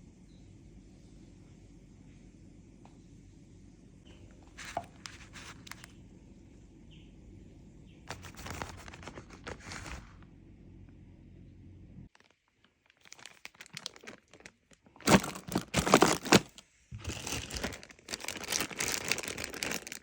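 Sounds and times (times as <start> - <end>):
leaves crinkling and rustling: 4.5 - 5.9, 8.1 - 10.2, 12.1 - 20.0.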